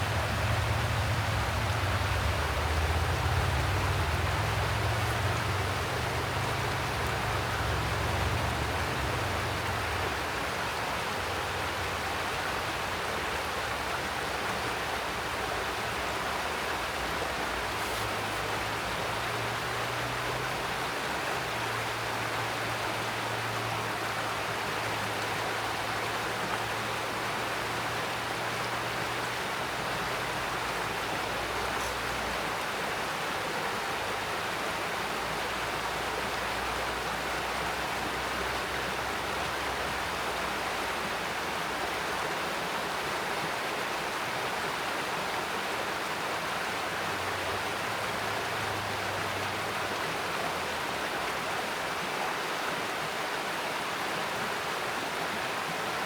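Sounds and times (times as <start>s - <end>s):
stream rushing water: 0.0s - 56.0s.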